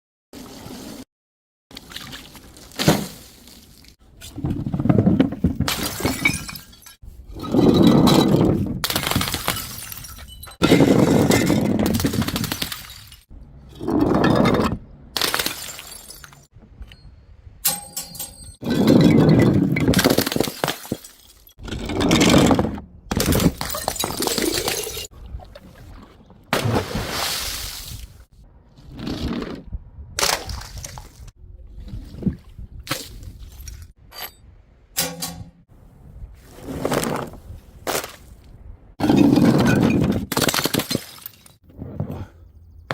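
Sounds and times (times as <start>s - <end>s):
glass bottles smashing: 5.7s - 7.0s, 8.9s - 13.3s, 15.2s - 16.5s, 23.2s - 25.1s
objects smashing: 7.8s - 13.3s.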